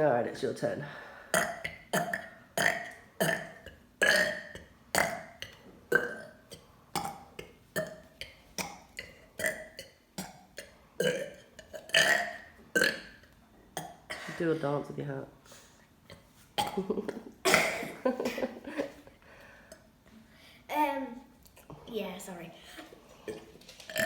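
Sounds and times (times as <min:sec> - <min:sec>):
person burping: 0:01.3 - 0:08.0, 0:09.4 - 0:13.2, 0:16.1 - 0:18.4.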